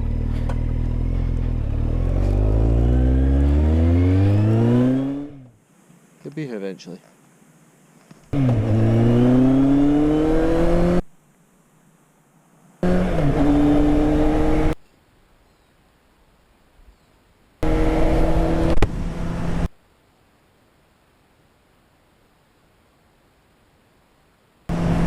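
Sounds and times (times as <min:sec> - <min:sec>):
motorcycle engine accelerating: 0:00.0 - 0:05.5, 0:08.3 - 0:11.1, 0:12.8 - 0:14.8, 0:17.6 - 0:19.7, 0:24.7 - 0:25.0.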